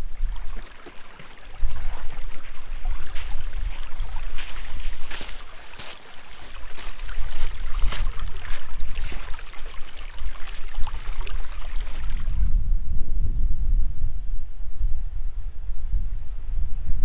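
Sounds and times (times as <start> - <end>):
wind rumble on microphone: 0.0 - 5.6, 6.4 - 17.0
footsteps crunching on trail: 0.4 - 12.3.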